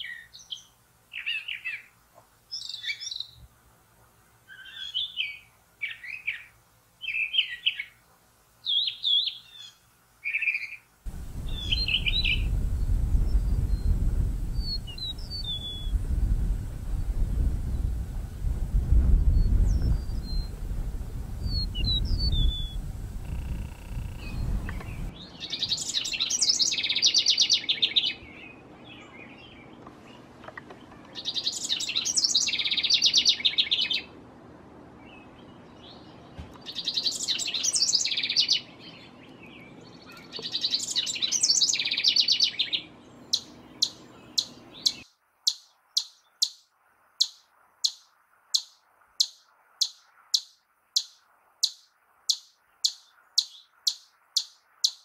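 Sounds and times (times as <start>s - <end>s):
songbird singing: 0.0s - 3.6s, 4.3s - 34.2s, 34.9s - 55.0s
bird high chirps: 4.5s - 8.0s, 8.6s - 16.0s, 19.3s - 20.6s, 21.4s - 29.8s, 31.0s - 34.1s, 35.8s - 55.0s.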